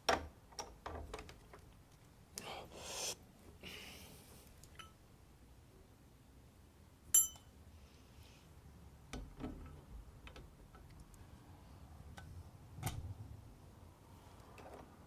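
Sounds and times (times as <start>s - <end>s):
ringing metallic clink: 4.8s - 5.0s, 7.1s - 7.5s.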